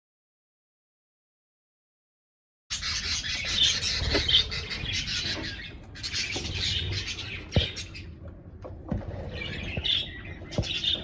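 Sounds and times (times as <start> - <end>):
budgerigars chattering and chirping: 2.7 - 8.0.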